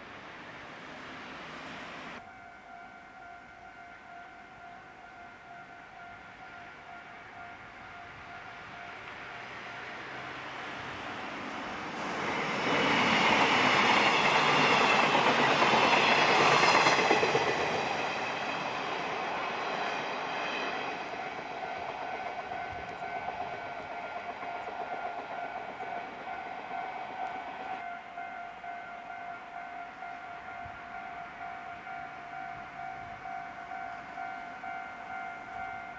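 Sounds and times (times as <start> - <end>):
train passing over crossing: 0.0 - 35.9.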